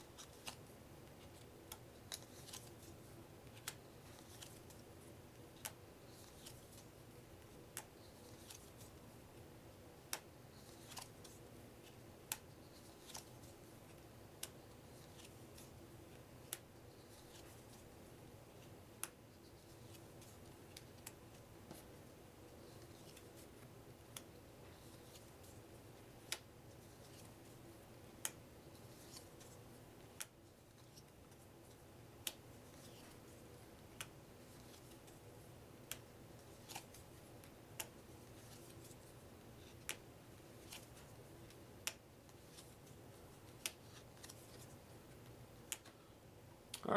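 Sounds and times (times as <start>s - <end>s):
faint steady hum: 0.0s - 46.9s
cards rustling: 0.1s - 4.9s.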